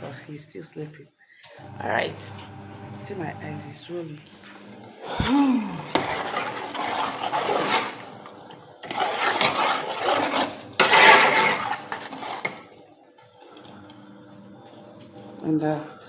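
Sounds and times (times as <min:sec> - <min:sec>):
knocking and rubbing of utensils: 0:05.1 - 0:12.7.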